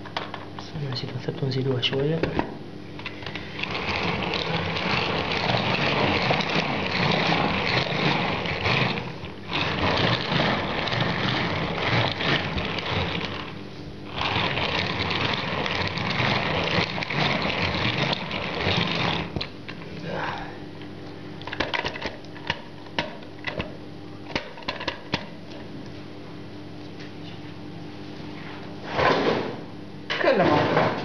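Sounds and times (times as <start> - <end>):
electric mixer beating batter: 1.9 - 20.6.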